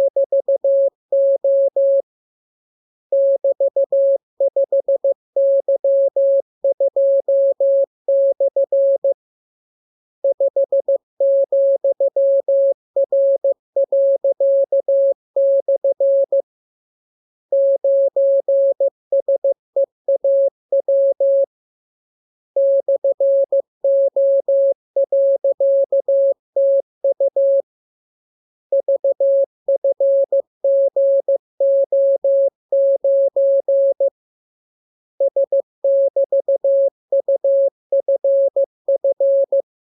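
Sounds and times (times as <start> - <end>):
morse code beeps: 0.0 - 2.0.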